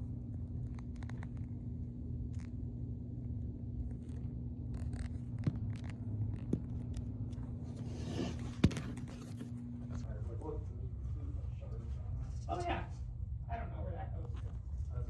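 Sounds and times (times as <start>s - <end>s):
low electrical hum: 0.0s - 15.0s
handling scrapes: 7.4s - 10.1s.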